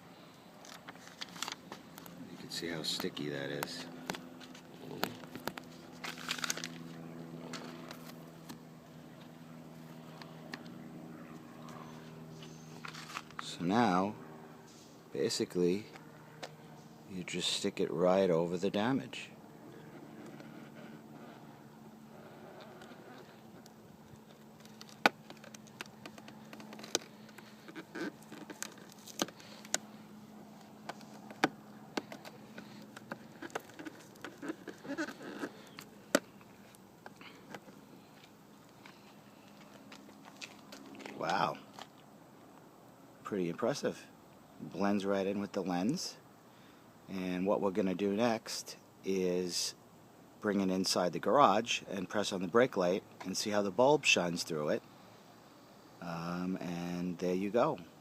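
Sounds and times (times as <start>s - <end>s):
steady low hum: 0.0s - 58.0s
plastic film crinkling: 5.2s - 6.9s
adhesive patch clicking and crackling: 22.2s - 30.0s, 30.6s - 42.0s.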